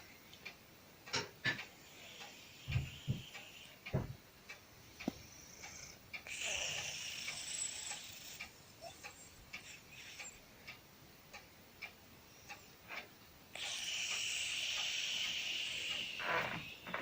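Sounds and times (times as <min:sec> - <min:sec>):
faint regular ticking: 0:00.0 - 0:17.0
cat breathing with wheezy hiss: 0:01.6 - 0:04.0, 0:04.7 - 0:10.8, 0:12.2 - 0:17.0.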